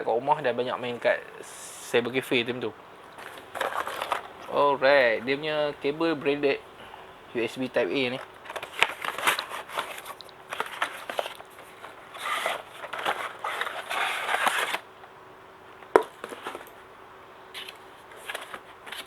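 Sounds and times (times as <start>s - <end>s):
packaging crinkling and rustling: 3.2s - 5.4s, 8.0s - 14.9s, 15.8s - 16.8s, 17.5s - 19.0s.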